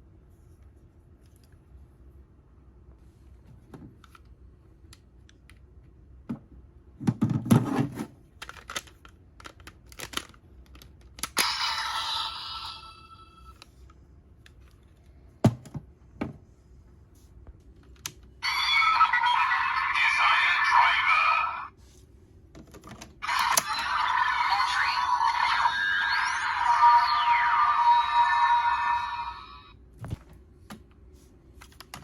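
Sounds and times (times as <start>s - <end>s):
toy electronic sound effects: 11.4s - 13.6s, 18.4s - 21.2s, 23.2s - 29.7s.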